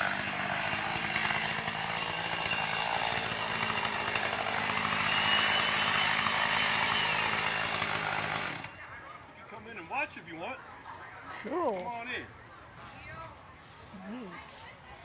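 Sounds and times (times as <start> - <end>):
chainsaw cutting wood: 0.0 - 8.8.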